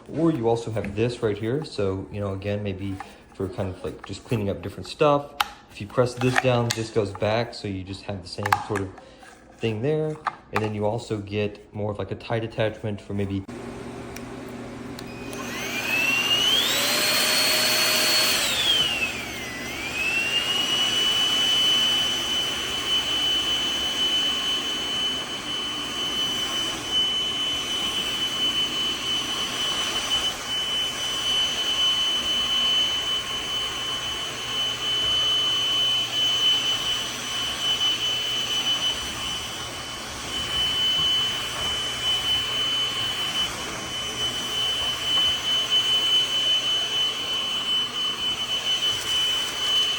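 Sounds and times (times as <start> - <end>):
vacuum motor whine: 13.5 - 49.9.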